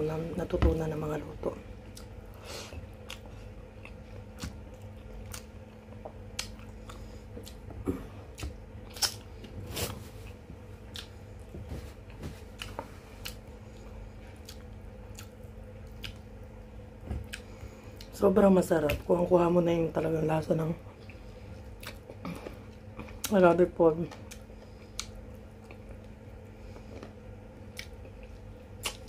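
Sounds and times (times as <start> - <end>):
person chewing food: 1.8 - 9.6, 10.2 - 18.1, 21.0 - 23.3, 24.1 - 29.0.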